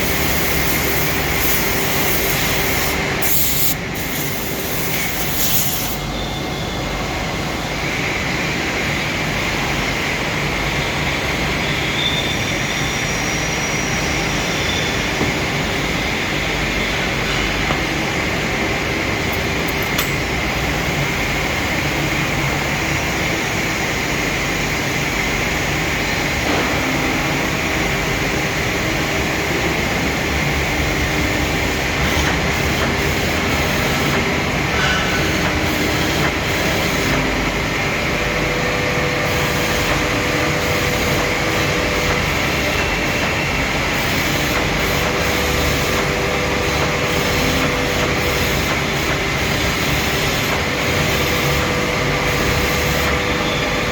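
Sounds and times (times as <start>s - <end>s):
mechanical running noise: 0.0s - 6.3s, 30.5s - 53.9s.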